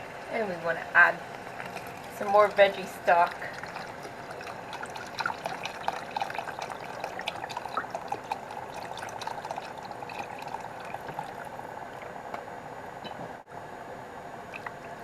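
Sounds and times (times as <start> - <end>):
lentils bubbling and popping: 0.0 - 12.4, 14.5 - 15.0
stock pouring into pot: 1.2 - 11.8.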